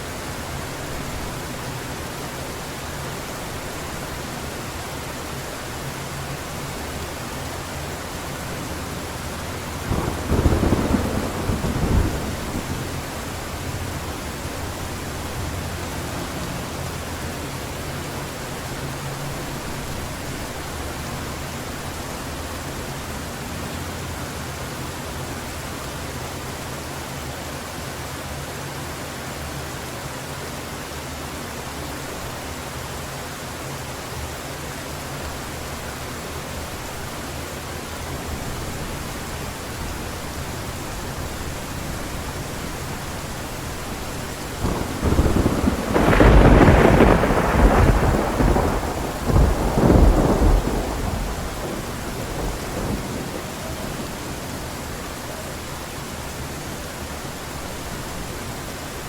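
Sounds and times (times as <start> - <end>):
heavy rain hissing: 0.0 - 59.0
thunder rumbling: 6.7 - 15.8, 41.2 - 55.3.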